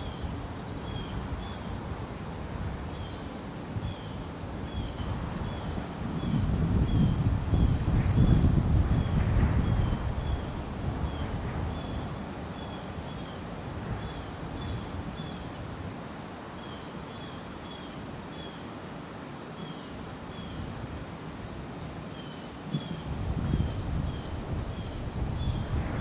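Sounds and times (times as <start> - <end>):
wind rushing: 5.1 - 12.4, 22.7 - 26.0.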